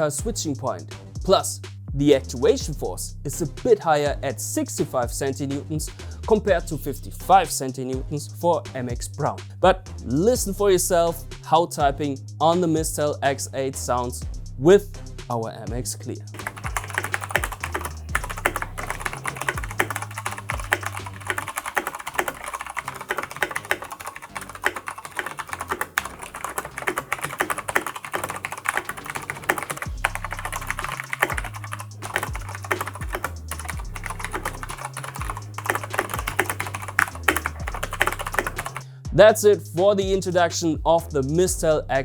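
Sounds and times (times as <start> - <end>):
background music with bass line: 0.0 - 42.0
fast typing on mechanical keyboard: 16.4 - 38.8.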